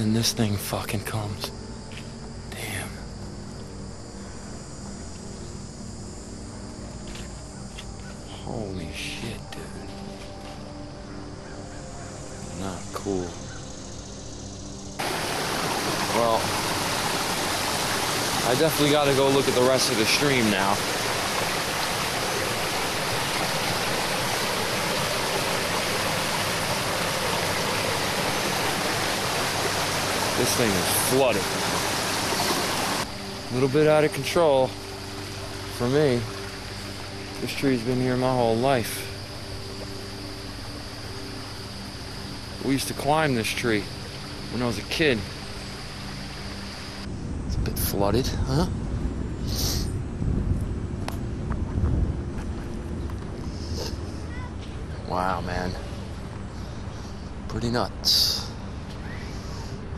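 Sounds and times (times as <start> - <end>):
stream rushing: 15.0 - 50.1
wind buffeting microphone: 47.2 - 53.6.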